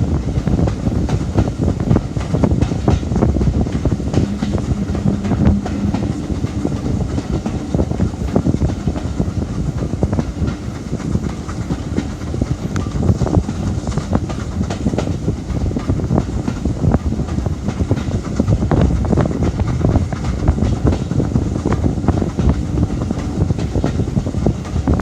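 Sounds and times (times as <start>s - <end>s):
steady rumble: 0.0s - 17.6s
train wheels clattering over rail joints: 0.0s - 25.0s
steady tone: 3.9s - 9.3s.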